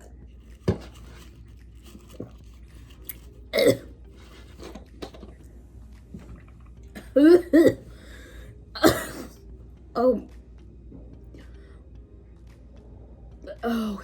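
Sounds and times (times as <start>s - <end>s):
woman chewing food: 0.0s - 4.9s.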